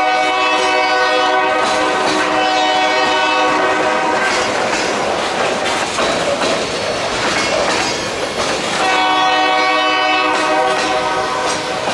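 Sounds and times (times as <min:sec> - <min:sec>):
train air horn chord: 0:00.0 - 0:04.4, 0:08.8 - 0:11.6
freight train wagons rumbling: 0:00.0 - 0:11.9.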